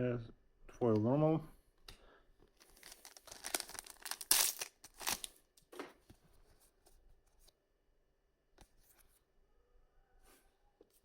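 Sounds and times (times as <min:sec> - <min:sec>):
trading cards rustling: 0:02.6 - 0:05.4.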